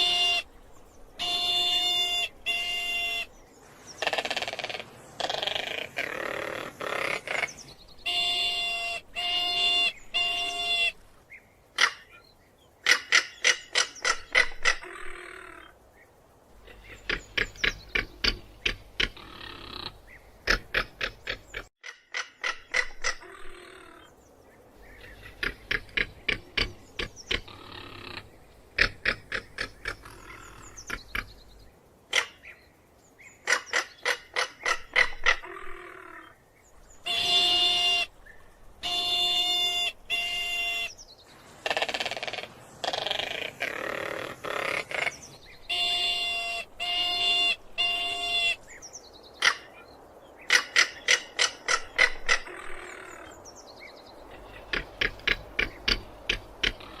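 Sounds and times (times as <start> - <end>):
bird rattling call: 4.0 - 10.9, 12.8 - 15.7, 54.3 - 57.0.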